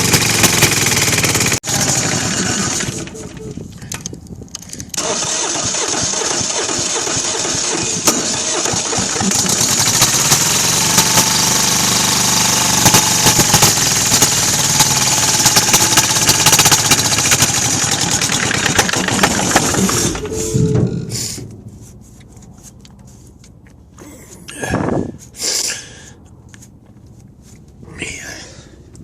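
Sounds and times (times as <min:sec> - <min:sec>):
diesel engine cranking: 0:00.0 - 0:21.6.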